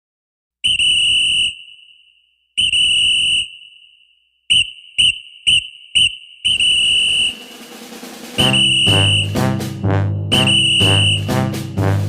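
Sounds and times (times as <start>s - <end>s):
whistle blasts: 0.6s - 7.8s, 8.4s - 9.6s, 10.3s - 11.5s.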